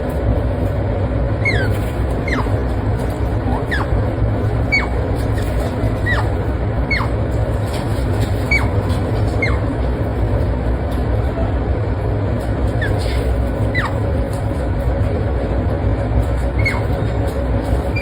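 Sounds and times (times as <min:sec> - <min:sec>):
otter squeaking calls: 0:01.4 - 0:09.9, 0:12.7 - 0:14.3, 0:16.3 - 0:18.0.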